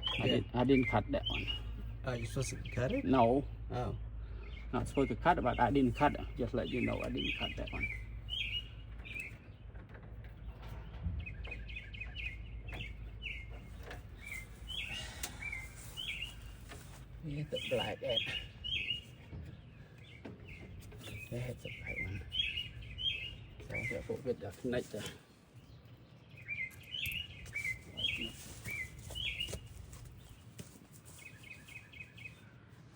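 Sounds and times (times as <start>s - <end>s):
low steady hum: 0.0s - 32.9s
small birds chirping: 0.0s - 32.9s.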